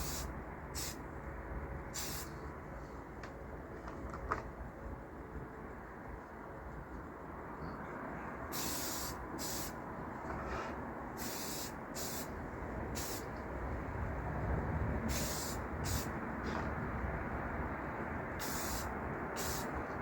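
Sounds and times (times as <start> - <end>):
spray paint can hissing: 0.0 - 1.0, 2.0 - 2.3, 8.5 - 9.8, 11.2 - 12.3, 13.0 - 13.3, 15.1 - 16.1, 18.4 - 19.7
low background rumble: 0.0 - 20.0.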